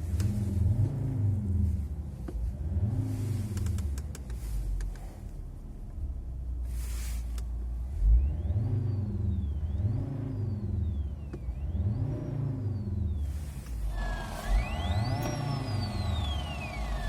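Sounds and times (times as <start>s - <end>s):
car engine revving and idling: 0.0s - 17.0s.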